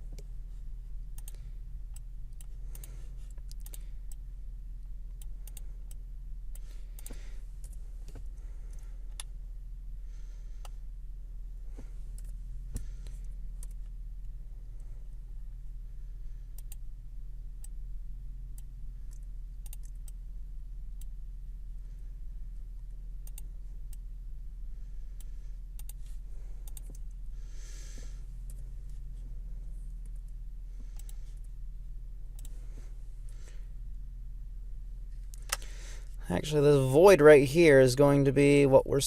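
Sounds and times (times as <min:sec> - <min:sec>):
soft hiss: 0:00.0 - 0:38.9
low electrical hum: 0:00.0 - 0:39.0.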